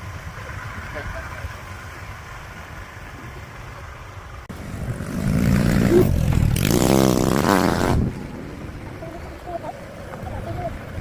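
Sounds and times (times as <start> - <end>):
vehicle driving past: 4.4 - 10.1.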